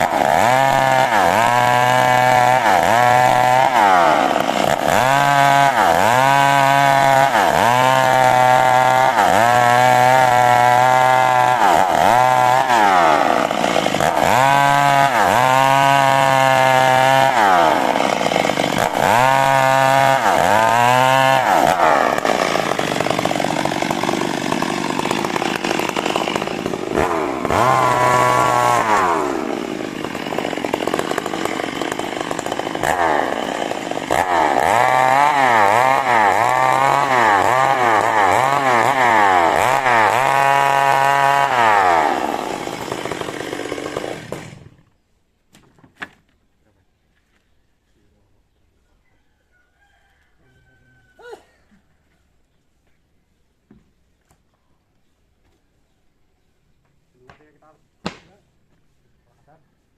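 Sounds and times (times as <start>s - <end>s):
chainsaw cutting wood: 0.0s - 46.3s, 57.2s - 58.8s.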